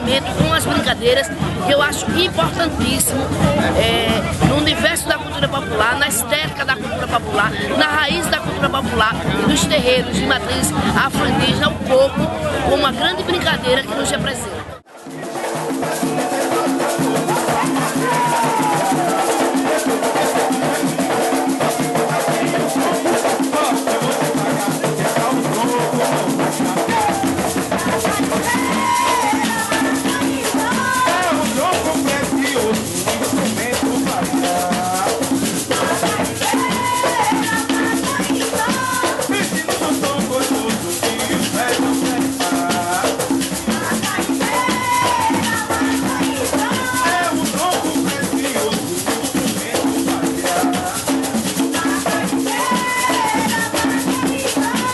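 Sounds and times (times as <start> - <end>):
drums: 0.0 - 54.9
shaker rhythm: 0.0 - 54.9
bass: 1.2 - 7.7
person singing: 15.8 - 54.9.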